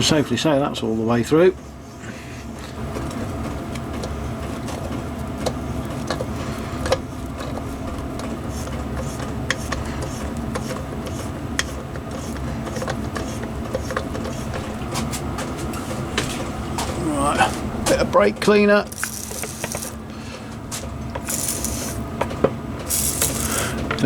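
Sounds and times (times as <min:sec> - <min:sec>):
milling machine running: 0:18.8 - 0:20.1, 0:21.2 - 0:22.1, 0:22.8 - 0:24.0.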